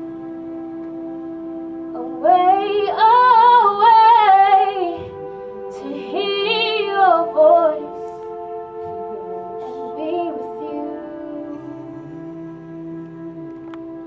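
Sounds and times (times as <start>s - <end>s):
held accompanying chords: 0.0s - 14.0s
woman singing with vibrato: 2.0s - 8.2s, 8.9s - 11.8s.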